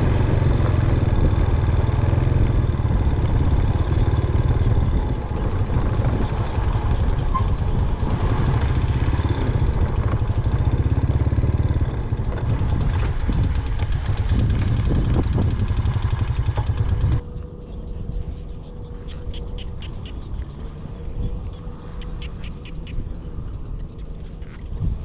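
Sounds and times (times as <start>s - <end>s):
engine running with fast pulse: 0.0s - 25.0s
steady high tone: 17.2s - 23.5s.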